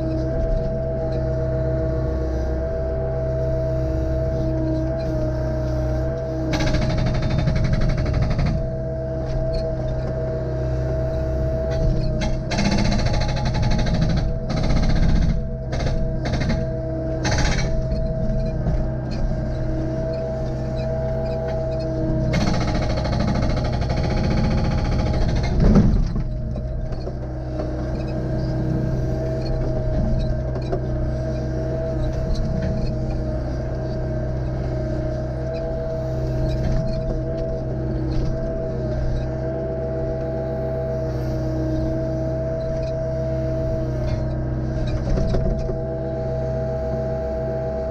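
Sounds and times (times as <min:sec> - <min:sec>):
diesel engine running: 0:00.0 - 0:47.9
hydraulic whine: 0:00.0 - 0:47.9.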